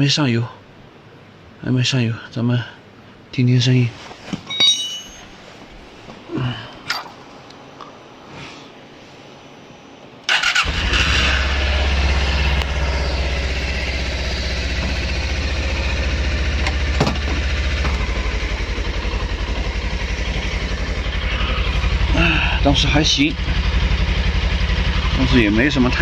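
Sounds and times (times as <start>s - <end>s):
motorcycle engine starting and idling: 10.3s - 26.0s.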